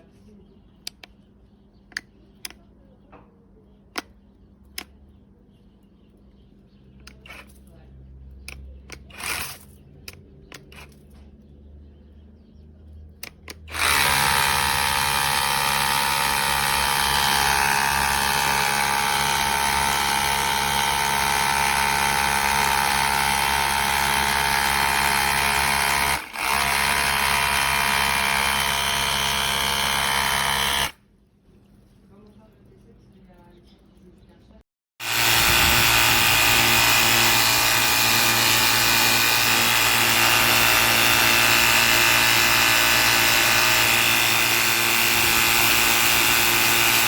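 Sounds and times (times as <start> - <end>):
clicks: 0.8 - 1.2, 1.8 - 2.7, 13.2 - 13.7
pressure washer motor whining: 13.5 - 31.0, 35.0 - 47.0.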